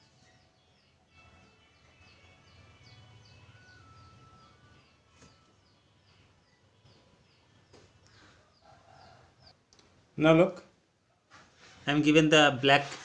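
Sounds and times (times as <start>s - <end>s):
bird chirping: 0.0s - 9.9s.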